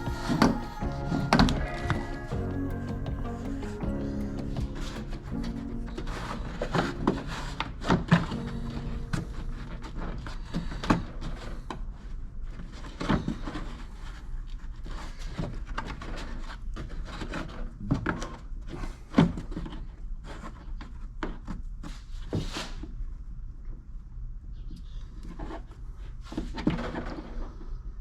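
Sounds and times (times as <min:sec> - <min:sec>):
steady low hum: 0:00.0 - 0:12.1.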